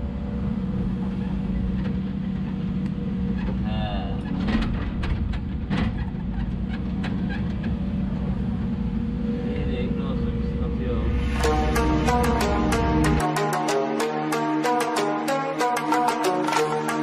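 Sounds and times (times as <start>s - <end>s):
excavator diesel engine: 6.6s - 17.0s.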